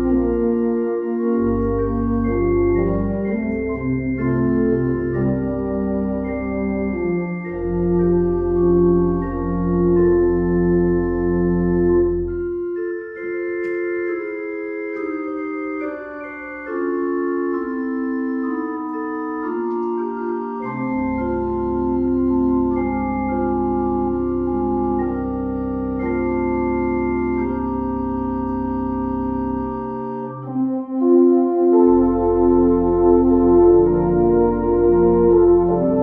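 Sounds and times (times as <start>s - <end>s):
deep organ bass note: 0.0s - 12.7s, 20.4s - 36.0s
organ playing slow chords: 0.0s - 36.0s.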